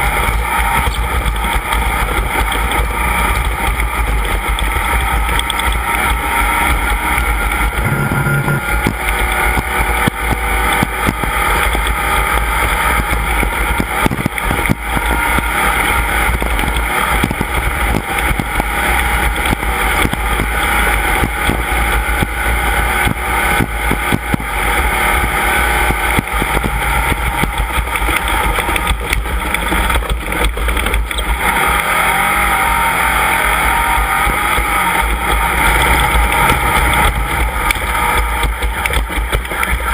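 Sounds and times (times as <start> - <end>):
race vehicle engine running: 0.0 - 39.9
knocks and rattles: 34.3 - 39.9.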